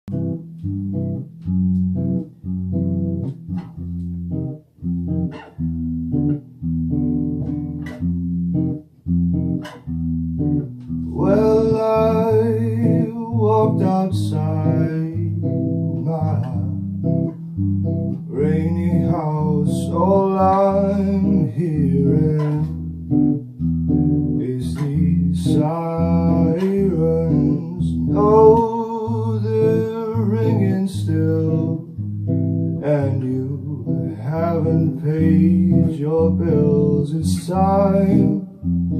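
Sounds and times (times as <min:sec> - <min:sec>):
bass guitar riff: 0:00.0 - 0:38.9
guitar riff: 0:00.0 - 0:38.9
person singing: 0:11.1 - 0:17.0, 0:18.1 - 0:22.8, 0:24.4 - 0:32.0, 0:32.8 - 0:38.7.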